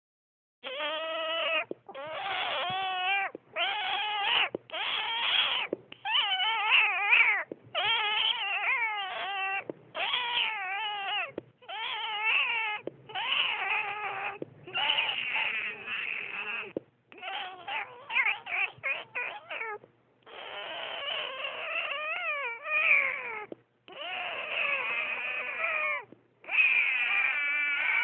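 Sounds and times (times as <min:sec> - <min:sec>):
cat yowling: 0:00.6 - 0:28.0.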